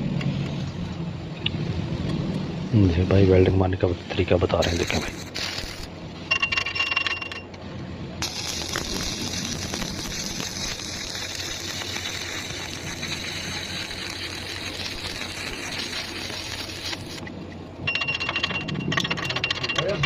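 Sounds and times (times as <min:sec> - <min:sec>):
welding arc crackling and hissing: 0:04.1 - 0:06.1, 0:08.2 - 0:17.3.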